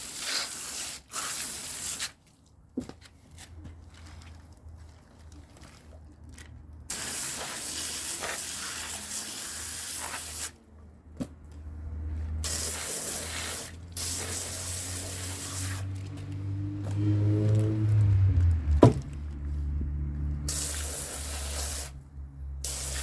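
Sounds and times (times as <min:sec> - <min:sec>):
water spraying from nozzle: 0:00.0 - 0:02.2, 0:06.9 - 0:10.6, 0:12.4 - 0:16.5, 0:20.4 - 0:22.0, 0:22.6 - 0:23.0.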